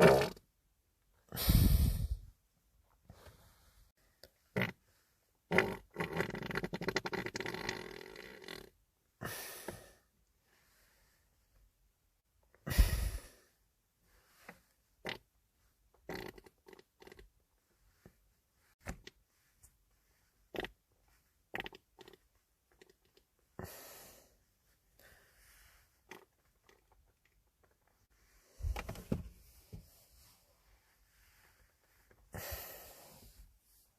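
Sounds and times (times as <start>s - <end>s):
wet farts: 0.0s - 0.4s, 4.6s - 4.8s, 5.5s - 8.7s, 15.0s - 15.2s, 16.0s - 17.2s, 20.5s - 20.8s, 21.5s - 23.2s, 26.1s - 26.9s.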